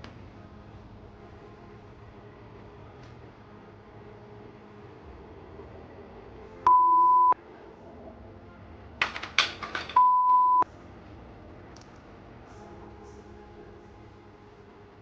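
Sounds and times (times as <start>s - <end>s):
high pure-tone censor bleeps: 6.7s - 7.4s, 10.0s - 10.6s.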